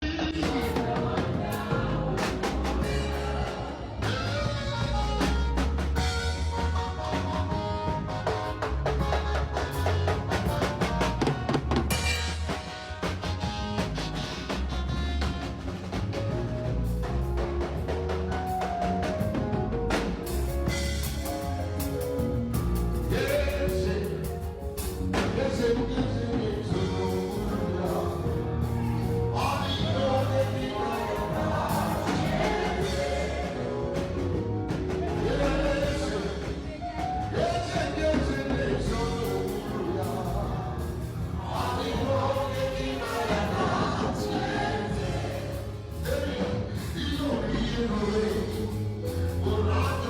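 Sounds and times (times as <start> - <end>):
people singing: 0.0 - 6.1, 23.0 - 50.0
bass line: 0.0 - 50.0
drum kit with cymbals: 0.1 - 50.0
sustained instrumental notes: 0.4 - 46.9.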